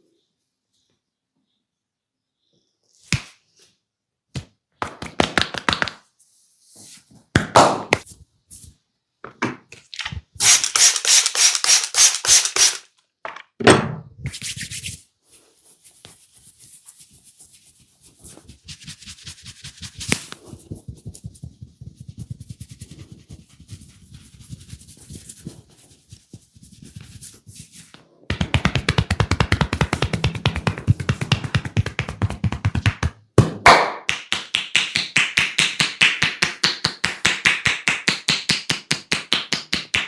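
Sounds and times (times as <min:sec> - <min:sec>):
hands rubbing and tapping skin: 0:04.3 - 0:06.1, 0:15.7 - 0:33.2, 0:34.0 - 0:40.0
soft patting strokes: 0:14.3 - 0:32.9.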